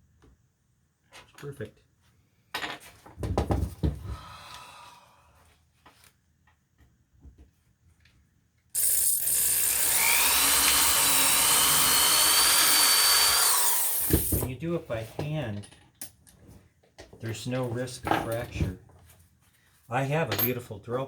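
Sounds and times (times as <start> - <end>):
electric drill whining: 8.8 - 14.4.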